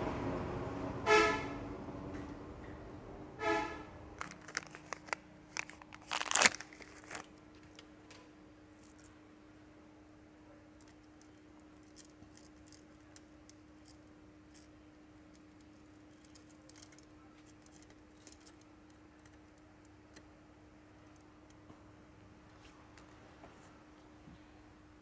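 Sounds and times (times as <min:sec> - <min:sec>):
faint steady hum: 0:00.0 - 0:25.0
small metal parts clicking: 0:04.2 - 0:07.8, 0:10.8 - 0:20.2.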